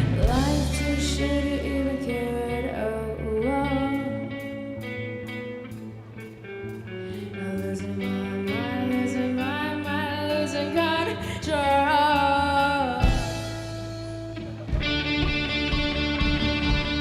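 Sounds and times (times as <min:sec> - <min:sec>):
person singing: 0:00.0 - 0:04.8, 0:07.2 - 0:14.1
rock band guitar and bass: 0:00.0 - 0:17.0.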